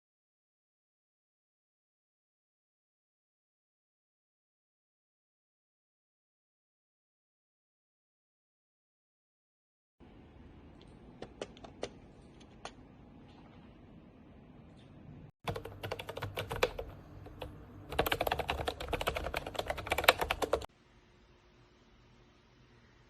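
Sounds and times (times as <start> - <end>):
keyboard typing: 10.8 - 12.8, 15.4 - 20.7.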